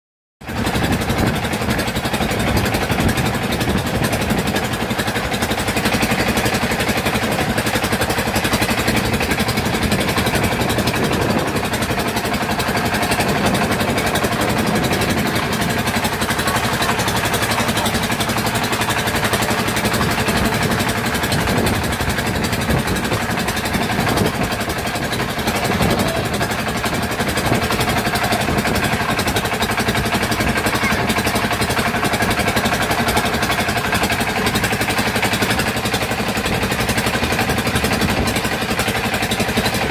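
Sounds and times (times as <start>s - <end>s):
boat engine droning: 0.4s - 39.9s.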